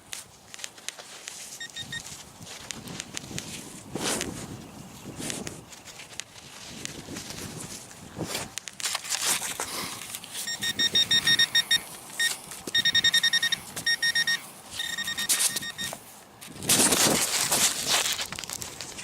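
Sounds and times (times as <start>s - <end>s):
digging scraping and rustling: 0.2s - 12.8s, 13.5s - 19.0s
metal detector beeping: 1.6s - 2.2s, 10.3s - 16.0s.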